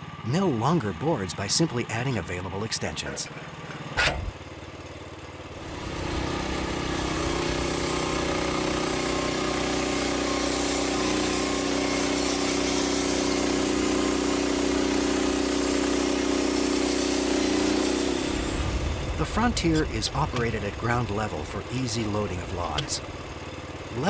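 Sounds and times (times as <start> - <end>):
band sawmill engine running: 0.0 - 24.0.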